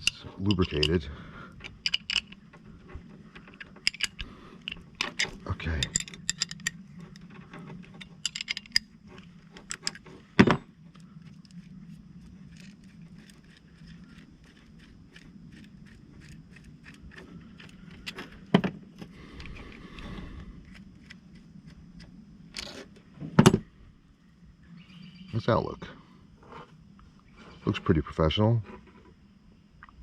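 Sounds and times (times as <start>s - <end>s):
wrench clicking on bolts: 0.0s - 1.0s, 1.6s - 2.4s, 3.4s - 6.8s.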